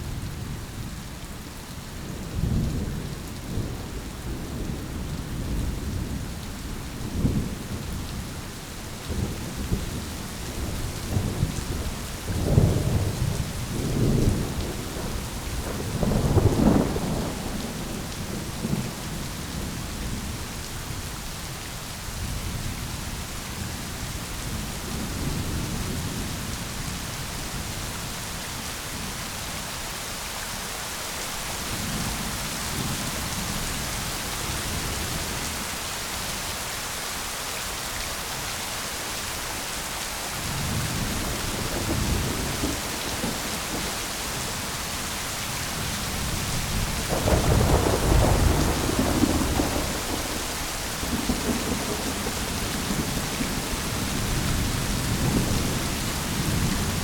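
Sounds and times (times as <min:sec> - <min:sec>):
steady rain: 0:00.0 - 0:57.0
rolling thunder: 0:10.6 - 0:20.4, 0:45.8 - 0:57.0.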